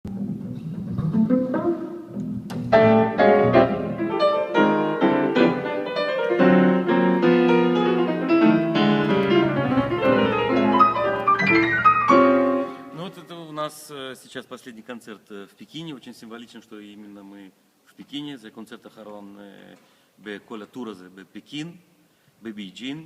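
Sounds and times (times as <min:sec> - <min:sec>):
double bass: 0:00.0 - 0:05.7, 0:06.5 - 0:12.7
piano: 0:00.0 - 0:13.3.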